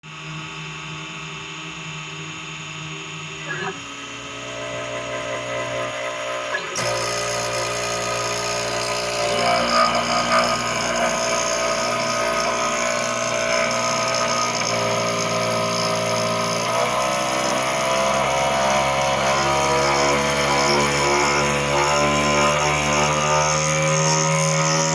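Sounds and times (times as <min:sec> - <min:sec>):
machine motor whine: 0:00.1 - 0:24.9.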